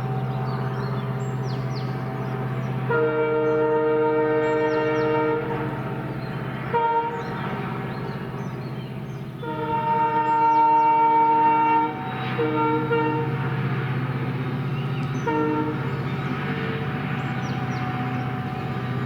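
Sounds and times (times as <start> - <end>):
diesel engine drone: 0.0 - 2.9
locomotive air horn blasts: 2.8 - 5.9, 6.7 - 7.4, 9.4 - 13.6, 15.1 - 19.0.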